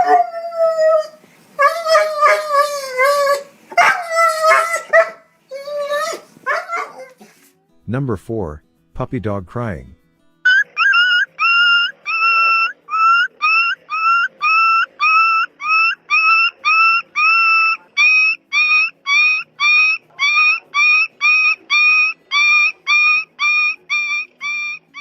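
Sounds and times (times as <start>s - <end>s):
puppy yelping: 0.0s - 7.4s, 10.5s - 25.0s.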